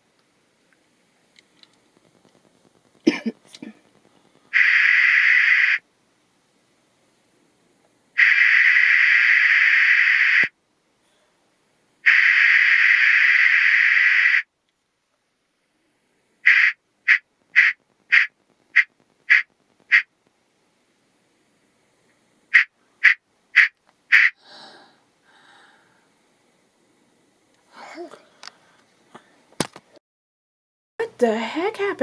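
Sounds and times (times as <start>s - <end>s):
hiss-like test noise: 12.0s - 14.4s, 15.8s - 20.2s.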